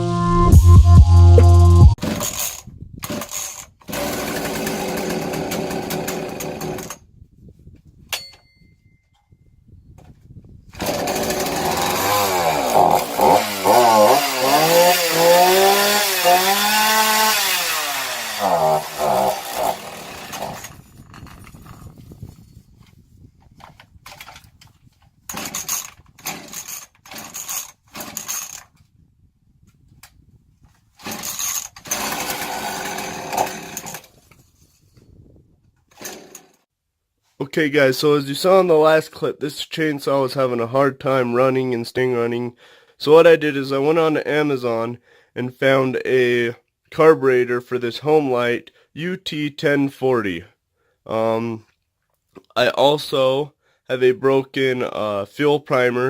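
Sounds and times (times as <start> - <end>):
chainsaw engine revving: 2.0 - 7.0, 10.8 - 20.9, 25.3 - 28.6, 31.0 - 34.1, 35.9 - 36.5.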